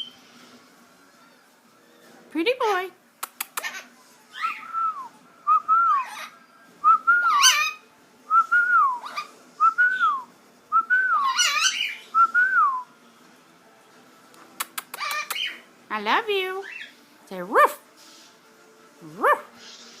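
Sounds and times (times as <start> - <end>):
bird whistling: 4.4 - 10.2, 10.8 - 12.8.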